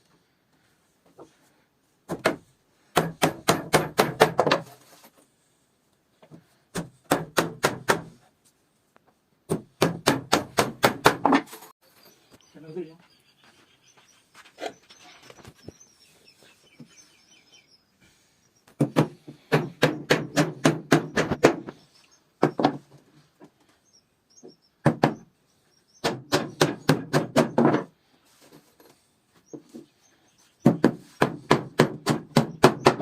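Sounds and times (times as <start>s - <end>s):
hammer striking wood: 2.1s - 4.7s, 6.7s - 8.2s, 9.5s - 11.5s, 18.8s - 21.7s, 24.8s - 25.2s, 26.0s - 27.9s, 30.6s - 33.0s.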